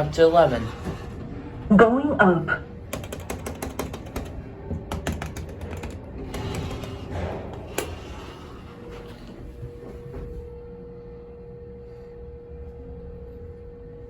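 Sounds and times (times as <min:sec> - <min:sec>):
elevator doors and machinery clicking: 0:00.0 - 0:10.5
elevator rattling travel noise: 0:00.0 - 0:10.6
faint steady hum: 0:00.0 - 0:14.0.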